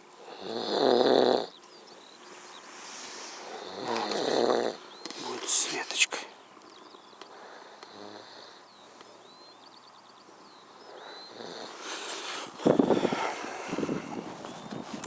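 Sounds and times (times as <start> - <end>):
faint bird chirps: 0.0 - 14.8
man snoring loudly: 0.3 - 1.6, 3.4 - 4.8, 7.9 - 8.3, 11.3 - 12.0.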